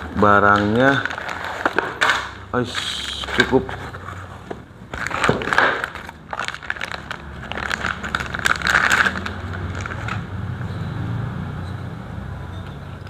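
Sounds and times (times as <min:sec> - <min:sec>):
packaging rustling and crinkling: 0:00.0 - 0:10.3.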